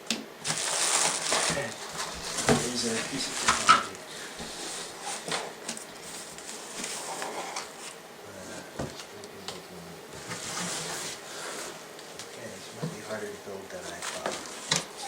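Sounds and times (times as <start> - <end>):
packaging rustling: 0.4 - 8.0.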